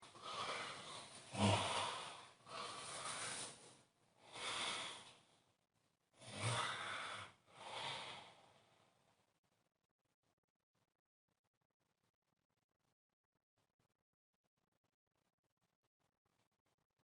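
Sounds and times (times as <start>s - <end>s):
person snoring: 0.1s - 3.6s, 4.2s - 5.1s, 6.2s - 8.5s.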